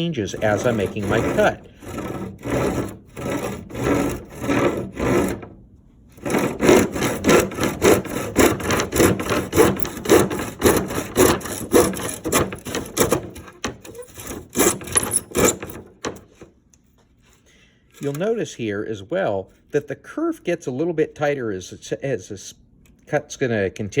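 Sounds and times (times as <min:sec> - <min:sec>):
hand saw cutting wood: 0:00.0 - 0:05.6, 0:06.2 - 0:16.5.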